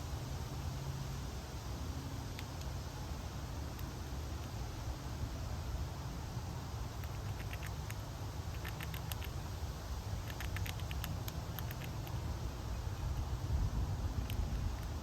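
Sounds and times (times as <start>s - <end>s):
steady low rumble: 0.0s - 15.0s
squirrel gnawing and chewing: 2.2s - 2.8s, 3.5s - 5.3s, 6.2s - 15.0s.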